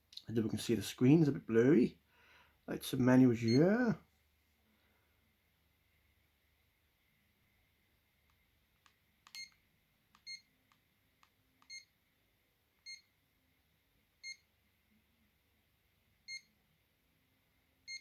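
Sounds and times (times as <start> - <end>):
phone keypad beeps: 9.3 - 9.6, 10.2 - 10.5, 11.7 - 11.9, 12.8 - 13.0.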